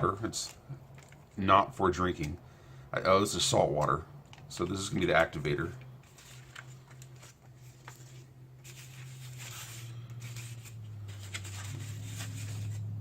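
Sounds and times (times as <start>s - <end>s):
packaging rustling and crinkling: 0.3s - 1.5s, 6.0s - 13.0s.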